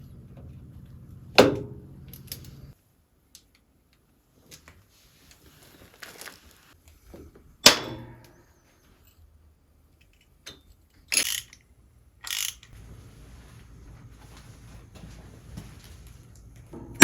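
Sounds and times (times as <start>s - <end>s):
low hum: 0.0s - 2.8s.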